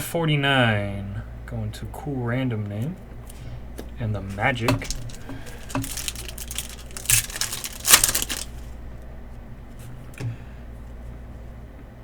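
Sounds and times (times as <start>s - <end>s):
cards and packaging crinkling: 4.3s - 8.7s.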